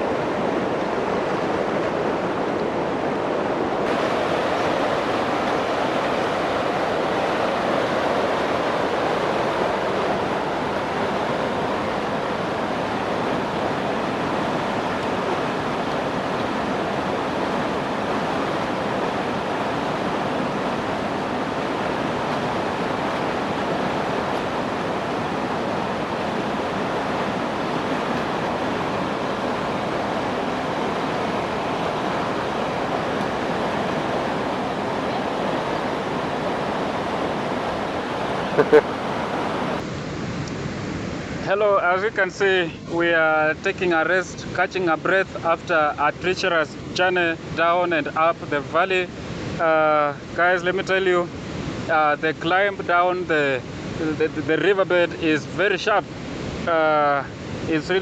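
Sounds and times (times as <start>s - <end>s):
waterfall roaring: 0.0s - 41.1s.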